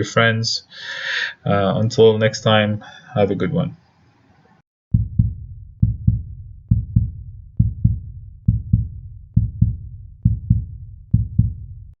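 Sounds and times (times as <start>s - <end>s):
heartbeat thumps: 4.9s - 12.0s.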